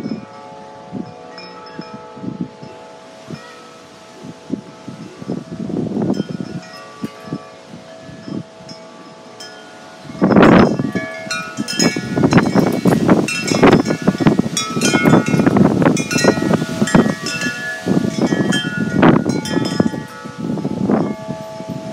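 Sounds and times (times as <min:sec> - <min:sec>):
wind chimes ringing: 0:00.0 - 0:21.9
wind gust rushing: 0:01.8 - 0:21.9.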